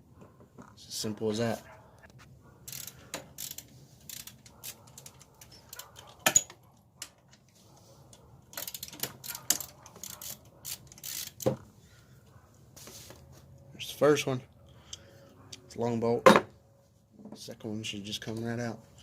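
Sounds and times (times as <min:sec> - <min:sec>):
socket ratchet clicking: 0:02.7 - 0:06.5, 0:08.5 - 0:11.5.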